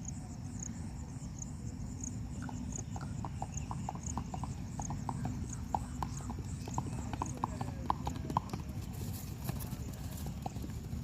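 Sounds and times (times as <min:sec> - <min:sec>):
horse hooves clip-clopping: 0:02.4 - 0:11.0.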